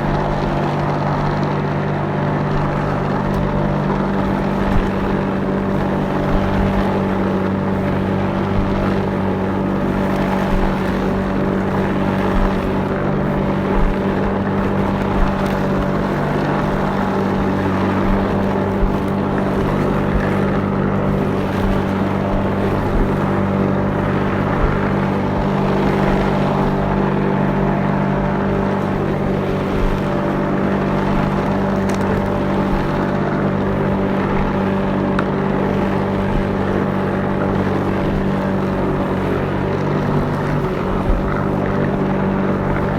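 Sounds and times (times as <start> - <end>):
lawnmower engine running: 0.0 - 42.9.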